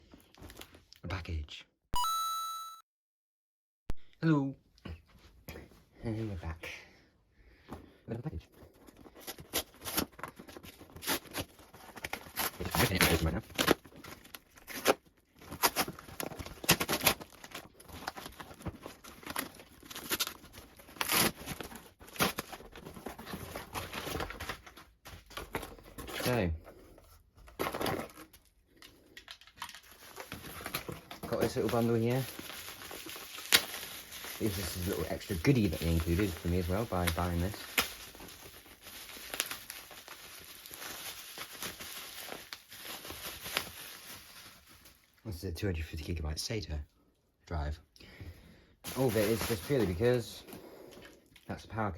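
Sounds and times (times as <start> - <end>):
package being torn open: 9.1 - 24.8, 27.6 - 45.0.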